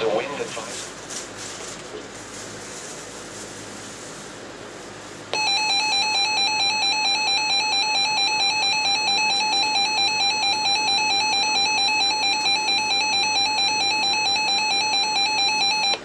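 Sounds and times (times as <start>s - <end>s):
pulsing electronic alarm tone: 5.4s - 16.0s.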